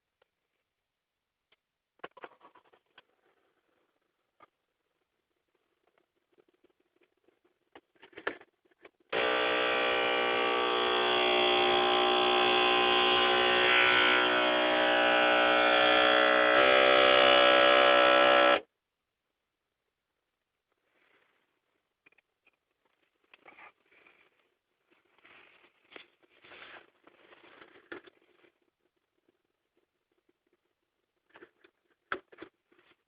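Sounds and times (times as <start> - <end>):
sunshade motor buzzing whine: 9.2 - 18.6.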